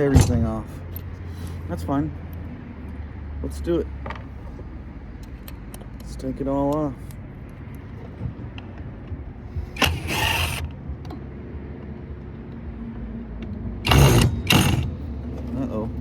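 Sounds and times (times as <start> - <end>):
power drill driving screws: 9.7 - 10.7, 13.8 - 15.1.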